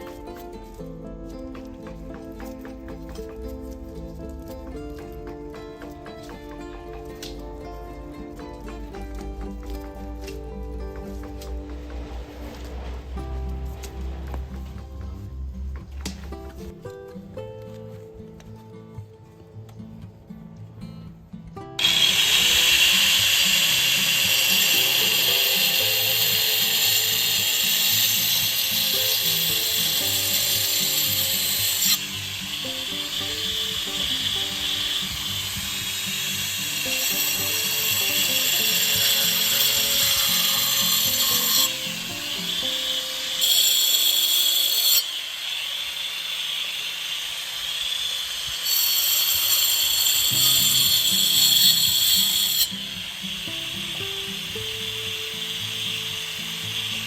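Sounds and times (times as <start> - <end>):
background music: 0.0 - 45.0, 50.0 - 57.0
high-pitched rasping noise: 21.8 - 57.0.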